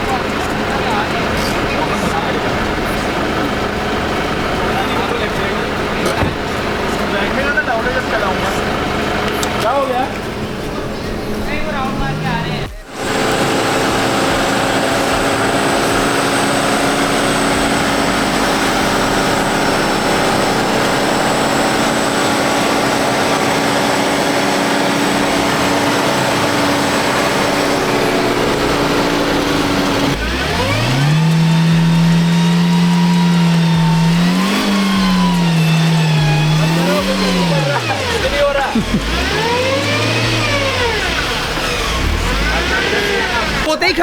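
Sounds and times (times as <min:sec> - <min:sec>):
engine revving high: 0:00.0 - 0:43.8.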